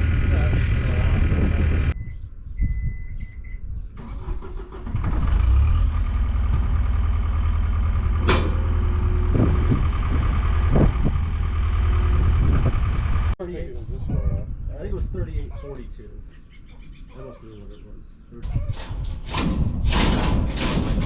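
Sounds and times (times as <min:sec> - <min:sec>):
engine running: 0:00.0 - 0:02.0, 0:04.0 - 0:13.4.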